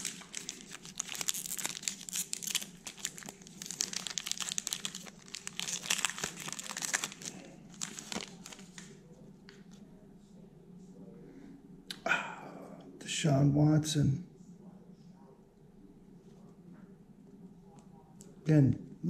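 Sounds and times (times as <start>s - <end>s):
foil wrapper crinkling: 0.0s - 8.9s.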